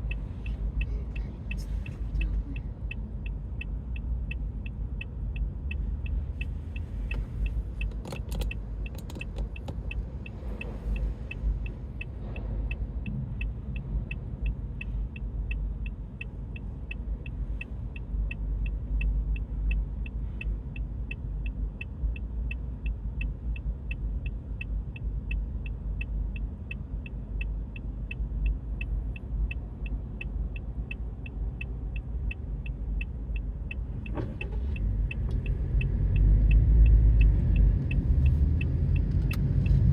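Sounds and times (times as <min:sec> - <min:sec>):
car engine and road noise: 0:00.0 - 0:39.9.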